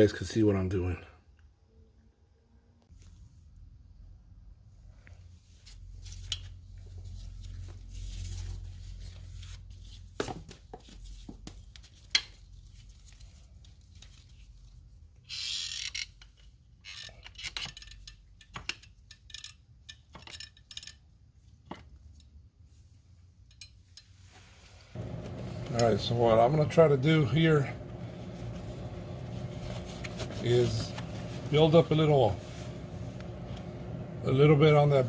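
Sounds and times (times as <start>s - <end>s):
short rustle: 24.2s - 33.8s.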